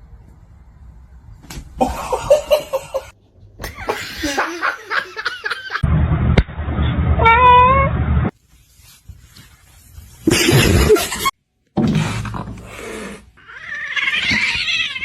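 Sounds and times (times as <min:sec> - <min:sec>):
person laughing: 0:01.8 - 0:05.8, 0:10.3 - 0:11.3.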